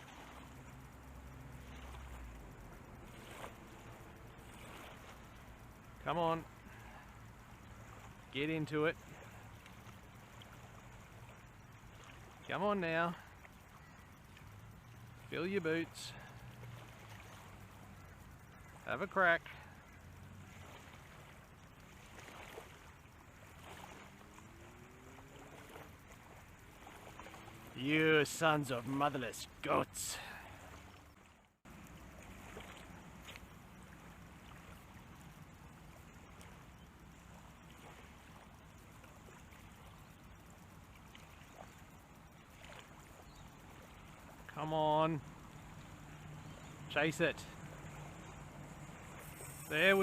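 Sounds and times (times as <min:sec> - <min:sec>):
faint low hum rising in pitch: 0:00.0 - 0:12.5, 0:19.6 - 0:44.6
faint water sounds: 0:00.0 - 0:50.0
small ticks: 0:09.1 - 0:12.4, 0:13.3 - 0:15.3, 0:30.8 - 0:44.5.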